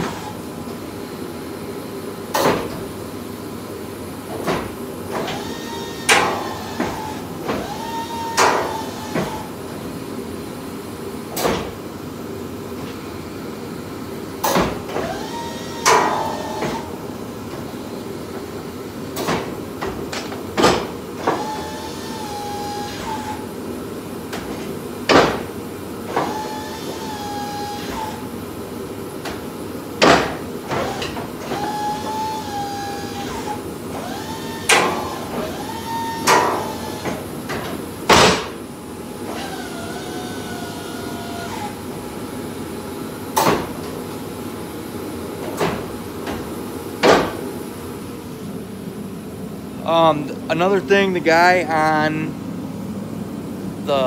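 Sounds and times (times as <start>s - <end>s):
hydraulic pump motor whining: 5.1s - 9.6s, 14.9s - 17.0s, 21.2s - 23.5s, 26.1s - 28.3s, 30.7s - 37.8s, 39.2s - 42.2s.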